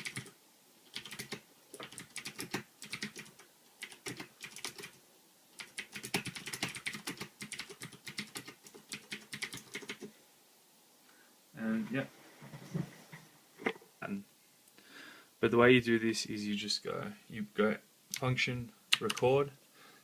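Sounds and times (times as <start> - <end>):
mechanical keyboard typing: 0.0 - 5.0, 5.6 - 10.1.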